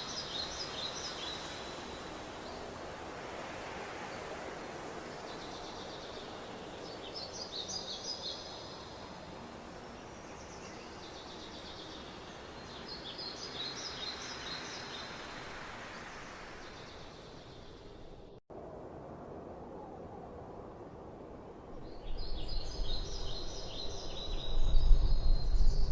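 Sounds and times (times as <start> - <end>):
background hiss: 0.0 - 18.4.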